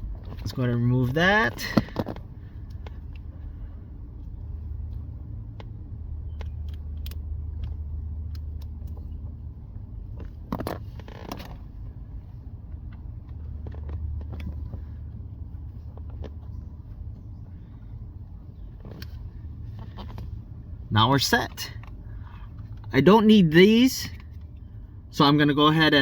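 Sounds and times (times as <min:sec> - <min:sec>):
car engine idling: 0:00.0 - 0:26.0
small clicks of fuses handled: 0:04.2 - 0:09.2.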